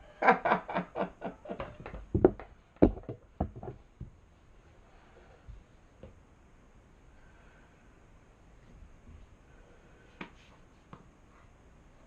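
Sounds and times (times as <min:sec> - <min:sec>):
hard objects clicking and knocking: 0:01.7 - 0:04.2.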